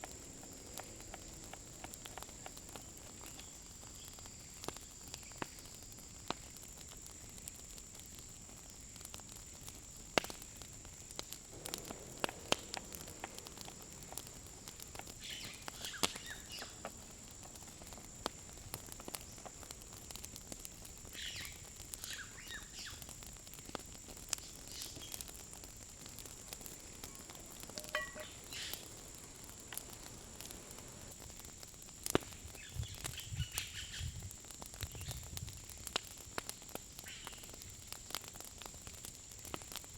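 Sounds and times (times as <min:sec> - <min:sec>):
bird chirps: 0:15.2 - 0:16.8, 0:27.0 - 0:29.2
high-pitched insect drone: 0:26.8 - 0:31.1.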